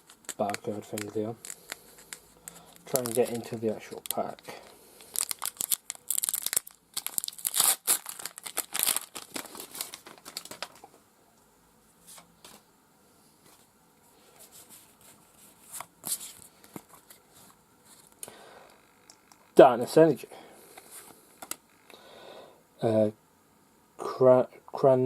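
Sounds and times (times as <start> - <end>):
foil wrapper tearing and crinkling: 0.0 - 10.9.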